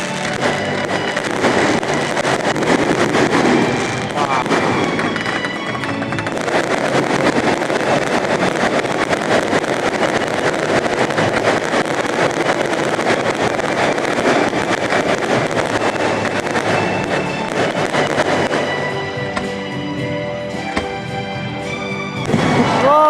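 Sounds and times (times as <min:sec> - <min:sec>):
fireworks crackling and rumbling: 0:00.0 - 0:23.0.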